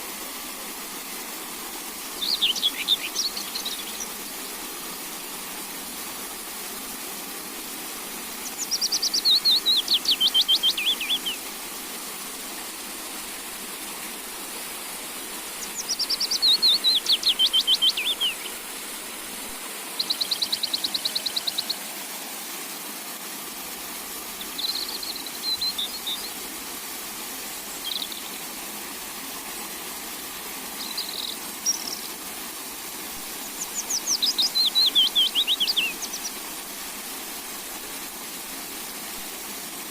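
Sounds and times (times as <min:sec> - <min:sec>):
steady hiss: 0:00.0 - 0:39.9
songbird singing trilled phrase: 0:02.2 - 0:04.1, 0:08.6 - 0:11.4, 0:15.6 - 0:18.5, 0:33.8 - 0:36.3
buzzy bird trill: 0:08.5 - 0:11.4, 0:33.6 - 0:36.3.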